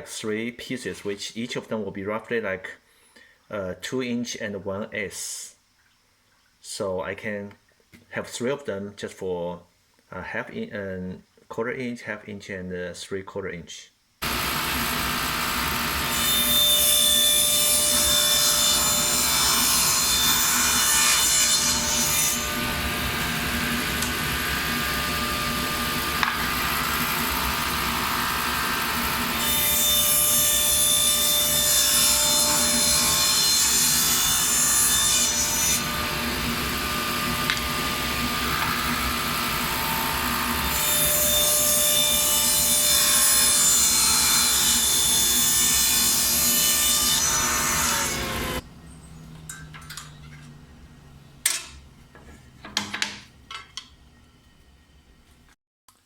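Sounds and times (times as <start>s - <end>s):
saw cutting plywood: 14.2s - 48.6s
table saw motor humming: 14.2s - 48.6s.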